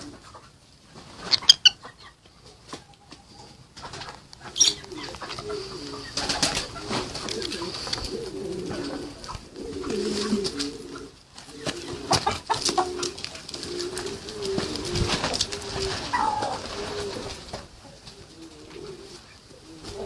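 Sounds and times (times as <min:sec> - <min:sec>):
birds cooing: 0:00.0 - 0:00.6, 0:01.3 - 0:20.0
birds chirping: 0:01.3 - 0:14.9, 0:15.5 - 0:16.9.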